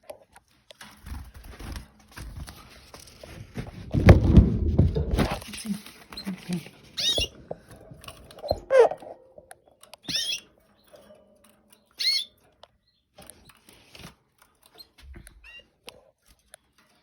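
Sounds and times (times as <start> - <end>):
canaries chirping: 5.4 - 17.0
small clicks and taps: 7.2 - 17.0.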